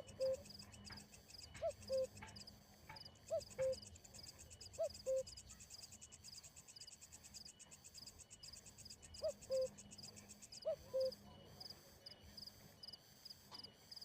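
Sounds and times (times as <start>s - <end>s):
bird hooting calls: 0.0s - 0.9s, 1.5s - 2.4s, 3.2s - 3.9s, 4.7s - 5.4s, 9.2s - 9.8s, 10.6s - 11.4s
crickets trilling: 0.0s - 14.0s.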